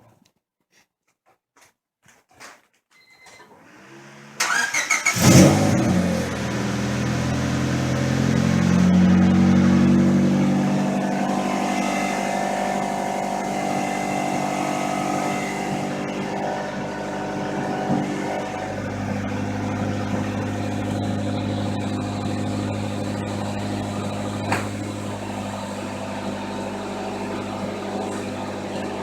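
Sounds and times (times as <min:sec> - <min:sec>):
car engine idling: 0:03.9 - 0:29.0
starter motor cranking: 0:04.4 - 0:06.0.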